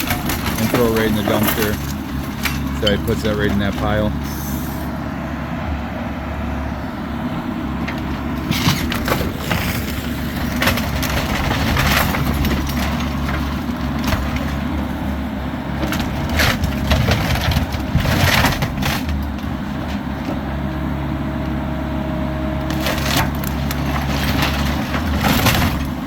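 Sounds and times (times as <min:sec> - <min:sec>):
wood cracking and crunching: 0:00.0 - 0:04.3, 0:07.8 - 0:20.6, 0:22.6 - 0:26.0
excavator diesel engine running: 0:00.0 - 0:26.0.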